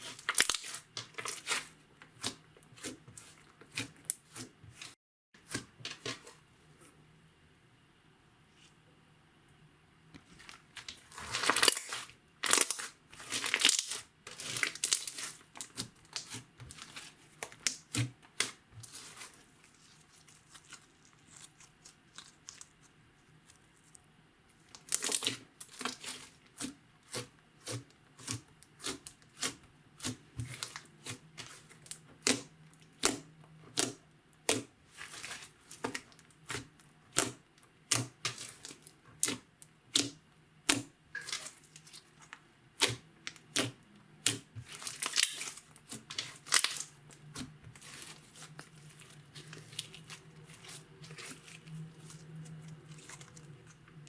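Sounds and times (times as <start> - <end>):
slime squishing with sticky pops: 10.2 - 22.9, 24.7 - 54.0.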